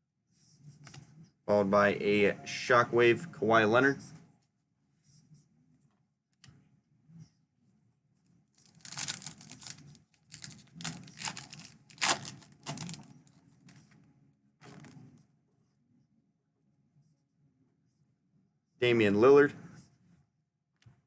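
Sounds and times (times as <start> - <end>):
foil wrapper tearing and crinkling: 8.6 - 13.1.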